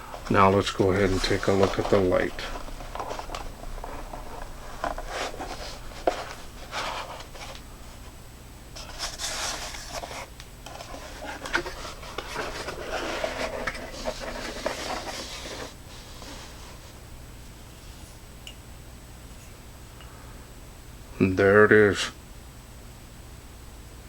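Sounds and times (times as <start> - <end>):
packaging rustling and scraping: 0.0 - 8.2, 8.8 - 17.0.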